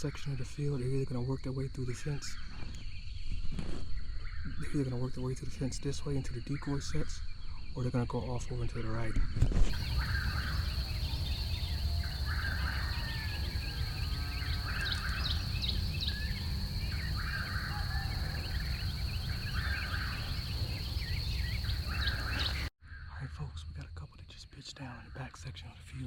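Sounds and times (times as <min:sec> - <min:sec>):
small birds chirping: 0:00.0 - 0:26.0
loud bird call: 0:09.7 - 0:23.4
steady high-pitched whine: 0:09.8 - 0:22.7.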